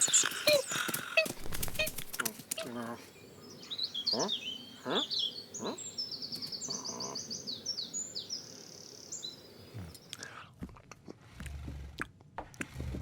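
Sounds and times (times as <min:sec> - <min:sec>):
small birds chirping: 0:00.0 - 0:10.3.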